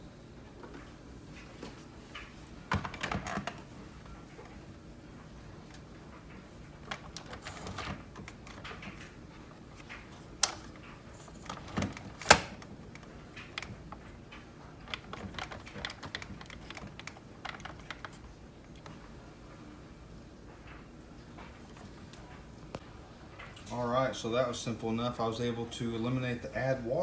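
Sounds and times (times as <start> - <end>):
plastic parts clicking and tapping: 2.2 - 3.7, 6.8 - 9.2, 9.8 - 19.0.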